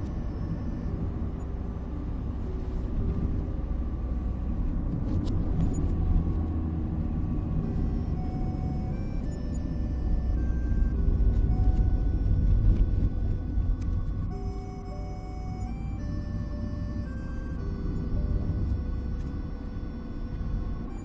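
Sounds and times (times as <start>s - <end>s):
car driving rumble: 0.0s - 21.0s
soft melody of held notes: 7.3s - 21.0s.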